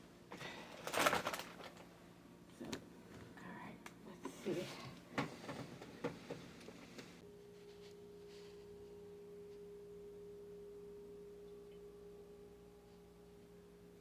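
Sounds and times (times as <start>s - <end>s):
faint low hum: 0.0s - 14.0s
steady pure tone: 7.2s - 14.0s.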